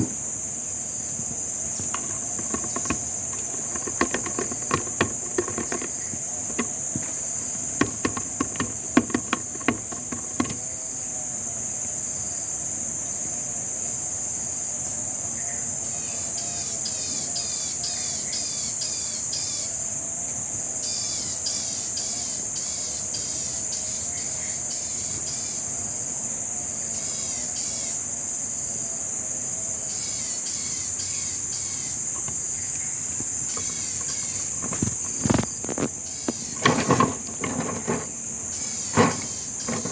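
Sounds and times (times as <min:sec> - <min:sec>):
insects droning: 0:00.0 - 0:39.9
clicks and rattles of wire snare: 0:01.8 - 0:10.6, 0:33.2 - 0:38.2, 0:38.8 - 0:39.9.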